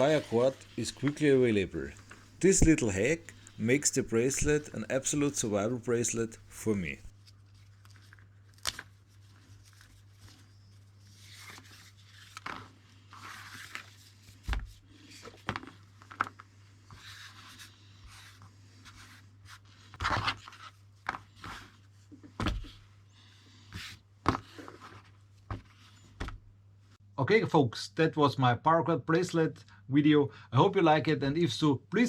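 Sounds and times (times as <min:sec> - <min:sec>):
cord rustling and scraping: 0:00.0 - 0:07.1
faint steady hum: 0:00.0 - 0:07.1.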